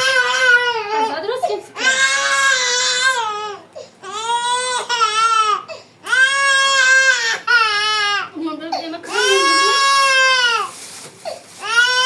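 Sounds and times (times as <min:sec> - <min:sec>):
young child crying: 0:09.1 - 0:10.5.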